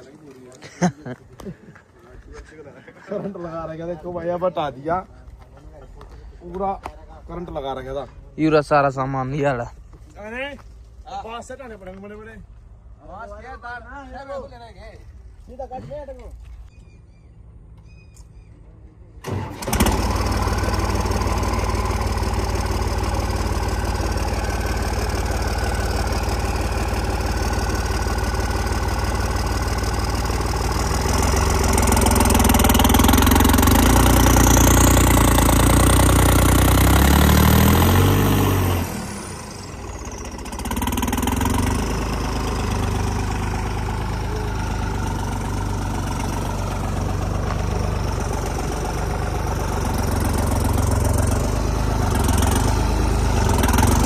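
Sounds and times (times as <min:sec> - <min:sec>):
diesel engine idling and revving: 0:16.6 - 0:54.0.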